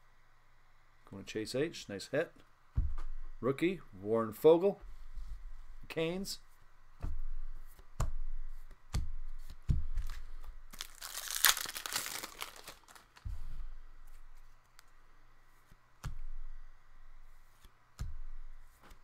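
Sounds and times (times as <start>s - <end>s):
cards bumping: 7.0s - 13.4s
wrapper tearing and crinkling: 10.0s - 13.3s.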